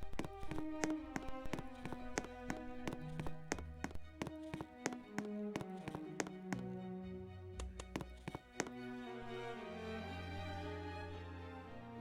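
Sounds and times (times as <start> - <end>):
quick tapping beat: 0.0 - 6.6, 7.6 - 8.7.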